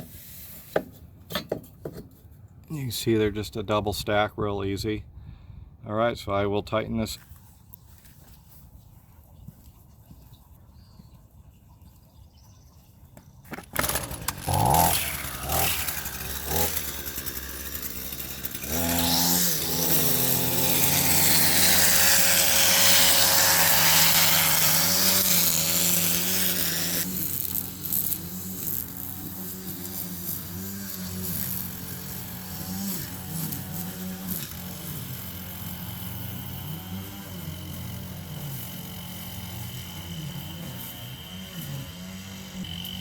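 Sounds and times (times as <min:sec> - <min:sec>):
lawn mower engine running: 0:13.5 - 0:43.0.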